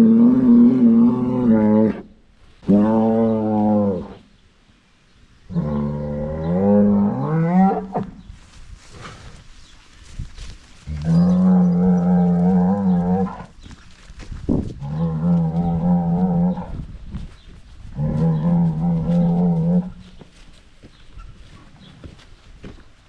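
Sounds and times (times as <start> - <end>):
cattle mooing: 11.0 - 13.5, 18.0 - 20.0.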